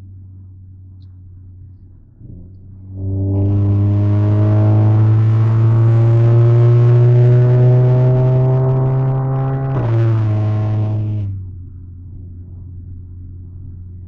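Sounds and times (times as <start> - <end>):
car engine accelerating: 2.2 - 11.6.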